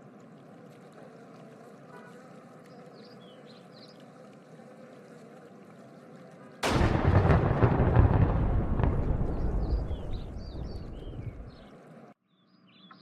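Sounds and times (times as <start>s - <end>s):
loud rumbling explosion: 6.6s - 11.6s.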